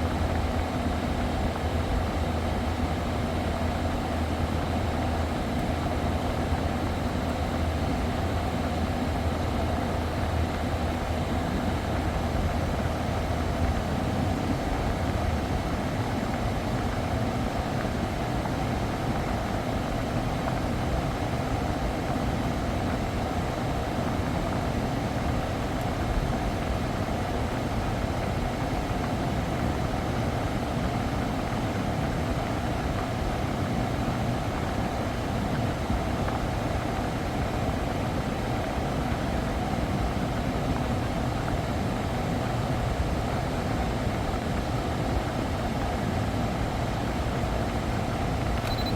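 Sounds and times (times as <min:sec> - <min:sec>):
air conditioning hum and whoosh: 0:00.0 - 0:48.9.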